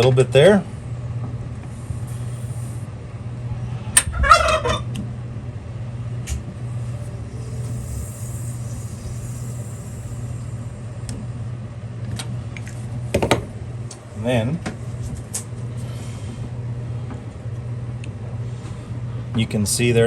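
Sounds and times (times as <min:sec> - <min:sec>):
low motor hum: 0:00.0 - 0:04.2, 0:04.8 - 0:19.2
faint high hiss: 0:06.6 - 0:11.3.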